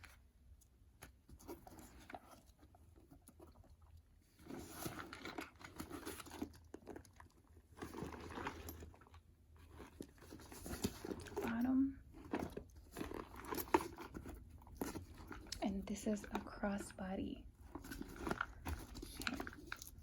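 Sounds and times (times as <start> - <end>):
fabric bag rustling: 17.5 - 20.0.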